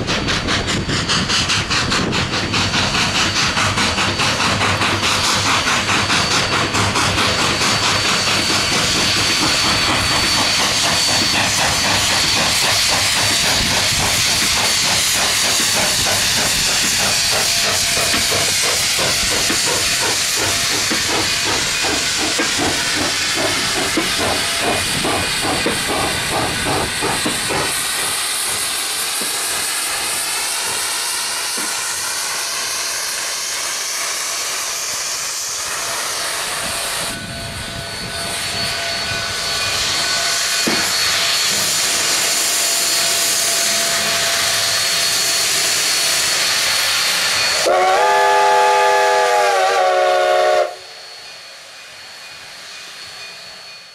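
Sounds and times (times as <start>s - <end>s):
steam hissing: 0.0s - 53.9s
chime steam whistle: 6.0s - 26.6s, 27.7s - 53.9s.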